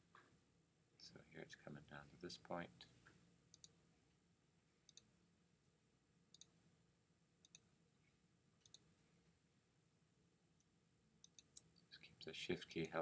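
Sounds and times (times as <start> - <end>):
computer mouse clicking: 6.3 - 6.5, 8.6 - 8.8, 11.2 - 11.7, 12.7 - 13.0.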